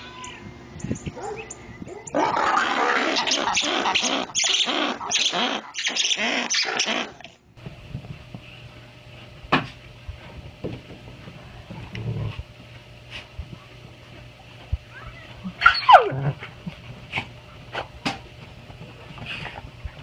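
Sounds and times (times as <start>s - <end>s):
pet animal calling loudly: 2.1s - 7.4s, 15.6s - 16.4s.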